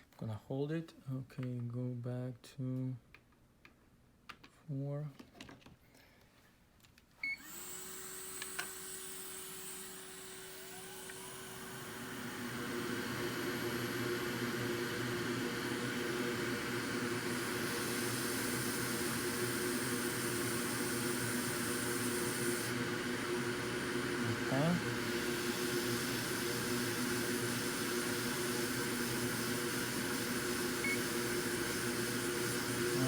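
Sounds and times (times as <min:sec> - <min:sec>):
blower fan hum and air hiss: 0:10.0 - 0:33.0.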